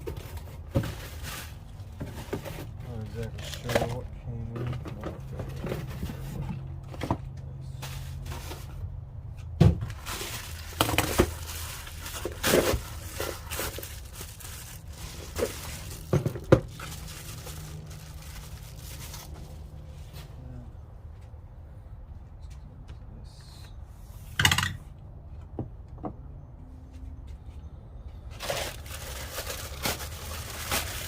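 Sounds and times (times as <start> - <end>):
packaging rustling: 9.9 - 19.8, 28.4 - 31.0.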